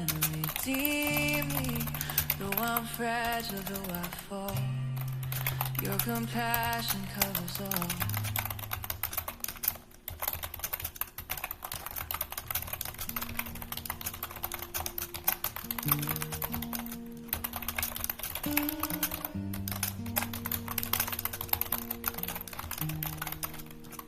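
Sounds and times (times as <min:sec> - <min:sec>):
soft instrumental worship music: 0:00.0 - 0:08.8
keyboard typing: 0:00.0 - 0:24.0.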